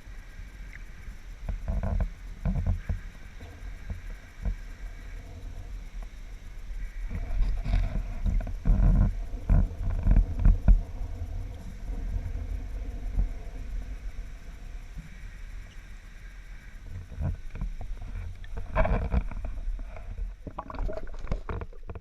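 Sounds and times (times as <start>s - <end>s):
water sloshing and splashing: 16.8s - 22.0s.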